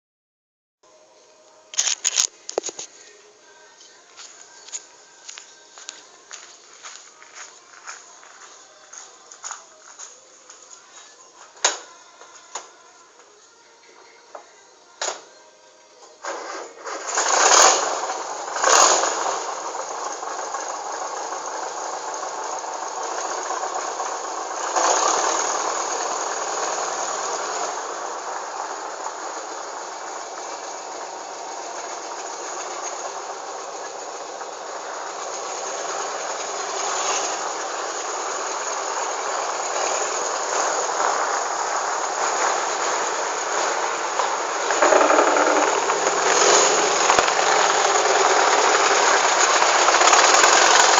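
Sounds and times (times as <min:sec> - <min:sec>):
car engine starting and revving: 0:16.3 - 0:50.9.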